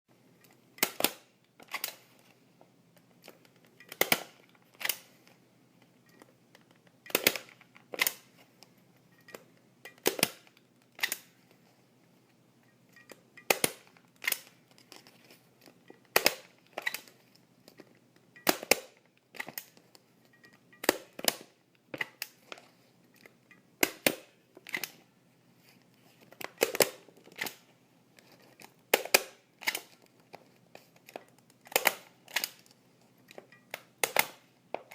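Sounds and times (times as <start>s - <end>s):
stapler clicking: 18.4s - 19.6s.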